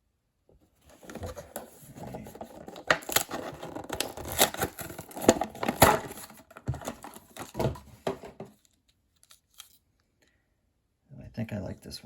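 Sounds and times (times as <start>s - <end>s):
toy packaging being opened: 0.9s - 9.8s.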